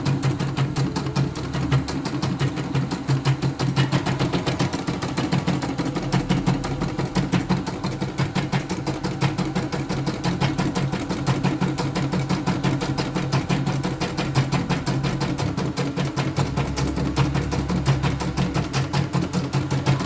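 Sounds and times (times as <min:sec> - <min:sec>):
low motor hum: 0:13.4 - 0:20.0.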